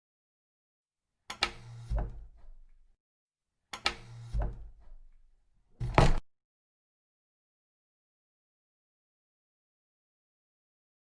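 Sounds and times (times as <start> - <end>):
low thump: 5.8 - 6.2.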